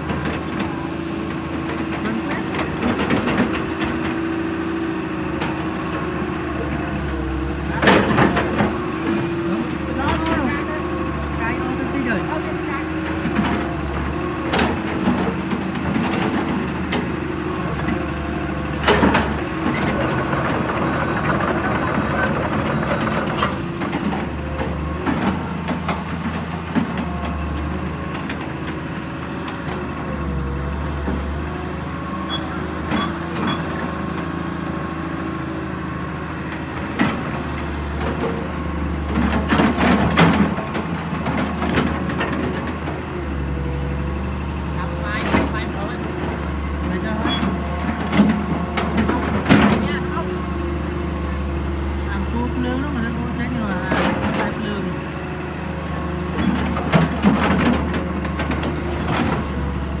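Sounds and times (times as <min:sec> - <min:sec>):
excavator diesel engine running: 0:00.0 - 1:00.0
metal clanks and knocks: 0:17.7 - 0:24.4, 0:45.1 - 0:51.5, 0:56.3 - 1:00.0.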